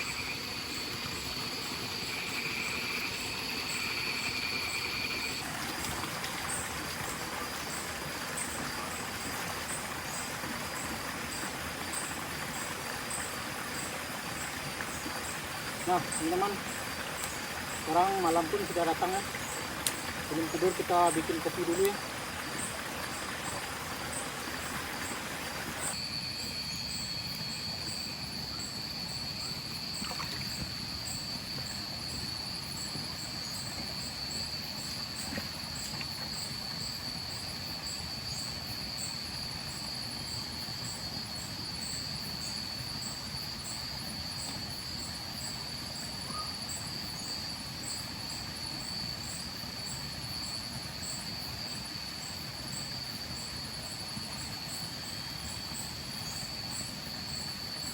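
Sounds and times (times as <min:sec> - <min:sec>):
crickets trilling: 0:00.0 - 0:57.9
river water rushing: 0:05.4 - 0:26.0.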